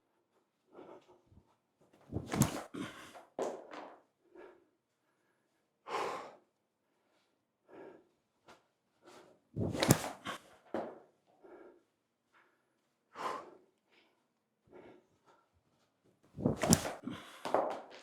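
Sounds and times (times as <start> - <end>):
person breathing forcefully: 16.4 - 17.6.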